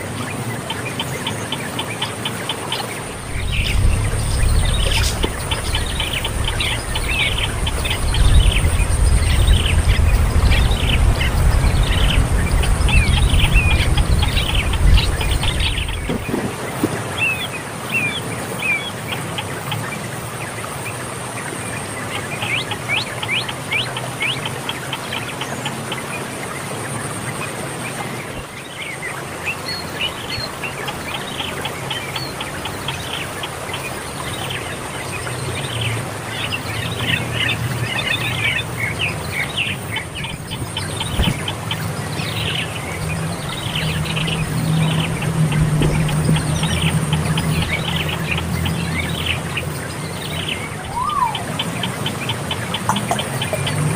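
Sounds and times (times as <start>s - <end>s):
small birds chirping: 0.0s - 53.9s
steady low hum: 0.2s - 18.1s.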